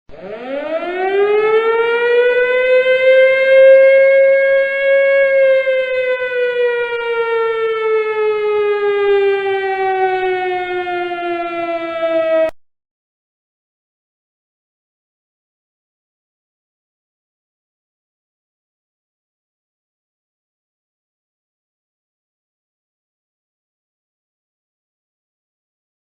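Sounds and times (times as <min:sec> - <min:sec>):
air-raid siren winding: 0:00.1 - 0:12.6.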